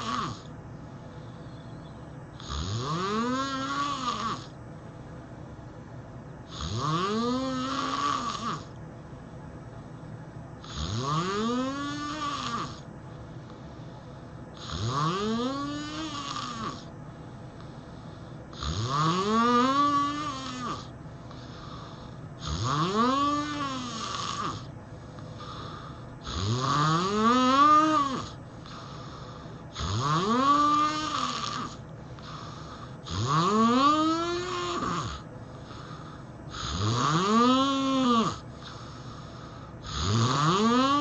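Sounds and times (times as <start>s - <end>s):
person snoring: 0.0s - 0.5s, 2.4s - 4.6s, 6.5s - 8.7s, 10.6s - 12.8s, 14.5s - 16.9s, 18.5s - 41.0s.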